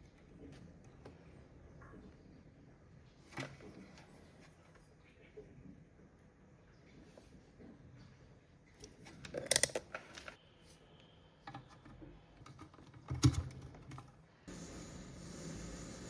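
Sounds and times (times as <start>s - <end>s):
steady hiss with low hum: 0.0s - 16.0s
clicks of small hard parts: 9.1s - 10.4s.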